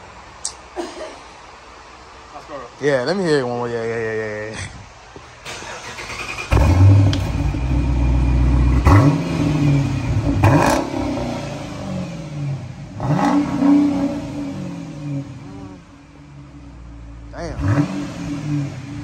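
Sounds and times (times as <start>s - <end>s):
car engine revving: 5.4s - 19.0s.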